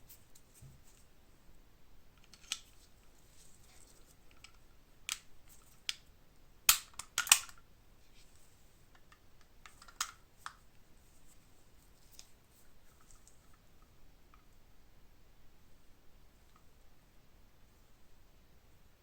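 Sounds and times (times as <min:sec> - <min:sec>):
padlock mechanism clicking: 0:06.7 - 0:07.6.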